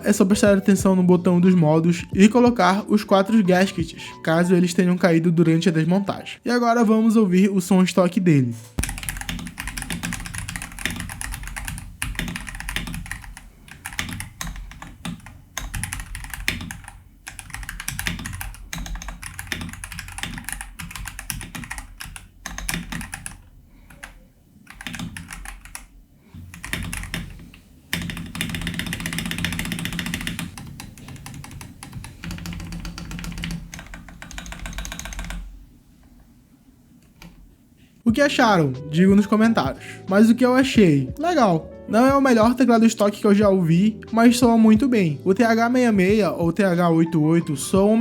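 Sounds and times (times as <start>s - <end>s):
mechanical keyboard typing: 8.8s - 35.6s.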